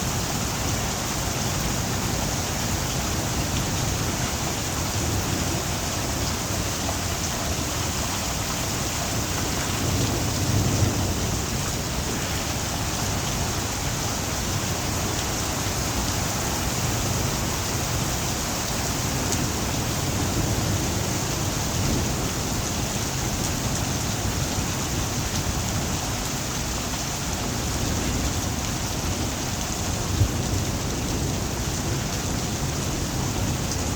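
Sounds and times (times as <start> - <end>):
heavy rain hissing: 0.0 - 33.9
low rolling thunder: 8.9 - 15.4, 19.1 - 25.9.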